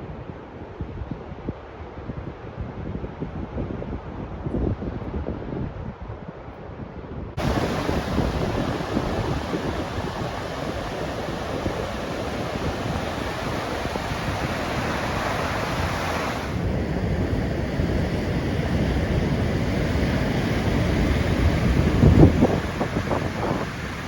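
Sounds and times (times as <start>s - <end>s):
wind buffeting microphone: 0.0s - 24.0s
sea surf washing in: 7.4s - 24.0s.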